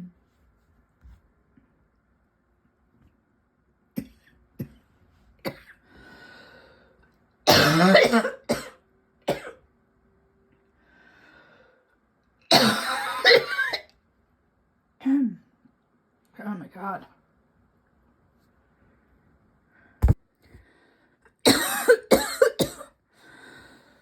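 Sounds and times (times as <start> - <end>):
person coughing: 4.0 - 4.8, 5.4 - 5.8, 7.5 - 9.6, 12.5 - 13.8, 21.4 - 22.9
faint breaths: 5.8 - 7.2, 10.7 - 12.0, 19.7 - 21.3, 23.1 - 24.0.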